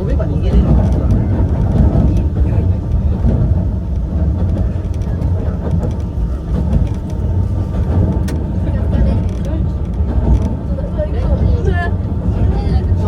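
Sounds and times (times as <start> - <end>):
train wheels rumbling on rail: 0.0 - 13.0.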